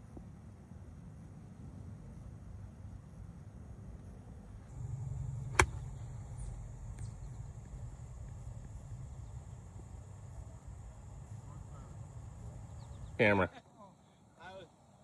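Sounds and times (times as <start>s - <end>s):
golf club striking ball: 4.7s - 13.2s
steady low rumble: 4.7s - 13.2s.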